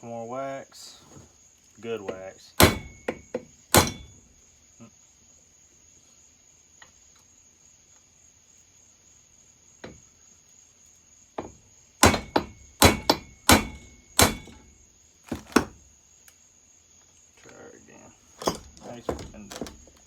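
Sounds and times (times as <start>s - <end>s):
hammer striking metal: 2.6s - 4.2s, 12.0s - 14.7s.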